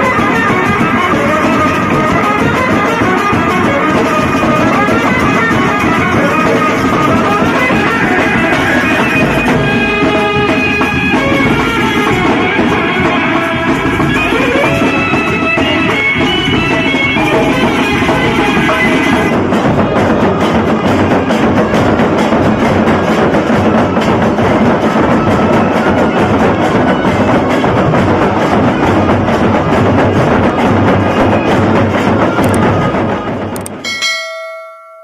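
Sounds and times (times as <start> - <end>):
piping wind instrument melody: 0.0 - 22.3
drums beaten in fast rhythm: 0.0 - 35.0.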